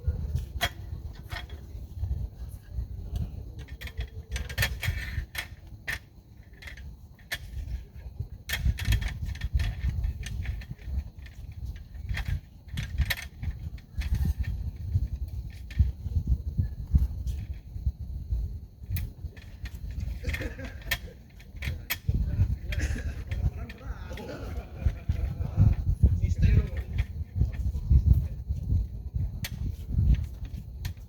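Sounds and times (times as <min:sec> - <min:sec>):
wind buffeting microphone: 0:00.0 - 0:31.0
small gear clicking and clinking: 0:03.6 - 0:07.8, 0:08.5 - 0:16.0.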